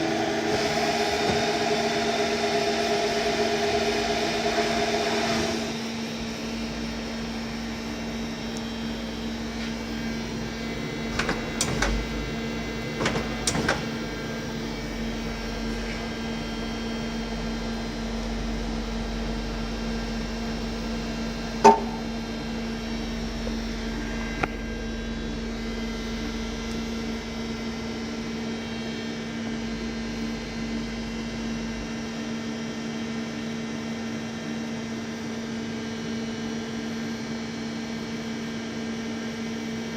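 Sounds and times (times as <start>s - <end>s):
lathe humming: 0.0s - 16.7s.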